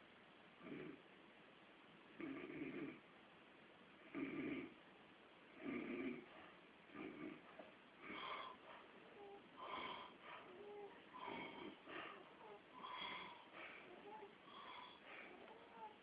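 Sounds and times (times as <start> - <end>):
man snoring: 4.1 - 4.7.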